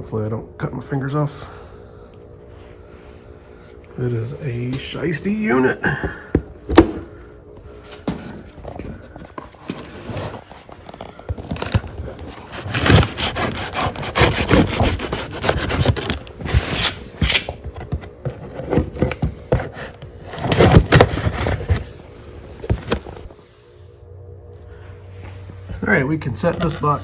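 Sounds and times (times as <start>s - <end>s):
cardboard rustling: 9.4s - 23.3s, 26.5s - 27.0s
knife scraping through cardboard: 12.3s - 17.5s, 18.3s - 21.9s.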